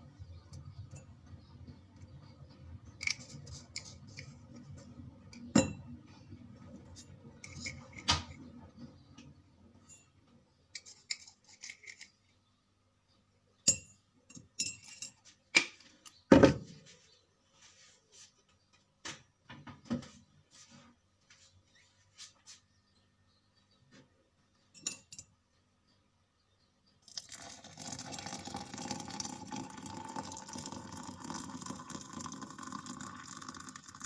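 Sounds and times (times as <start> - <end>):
dishes and utensils clinking: 13.6 - 15.8, 24.7 - 25.3.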